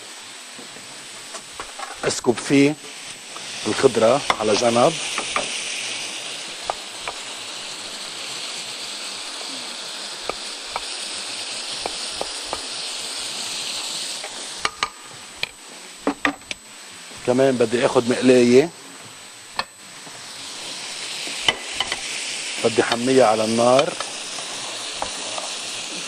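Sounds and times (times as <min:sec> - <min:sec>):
chicken sizzling in a pan: 0:00.0 - 0:26.0.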